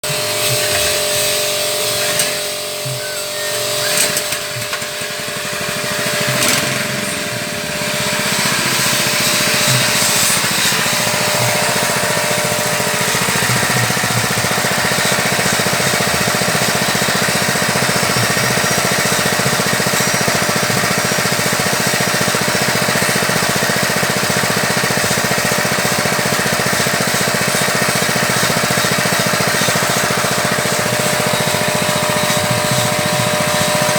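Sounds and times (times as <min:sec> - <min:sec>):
extruder machine humming: 0:00.0 - 0:33.9
machine knocks: 0:04.0 - 0:18.4.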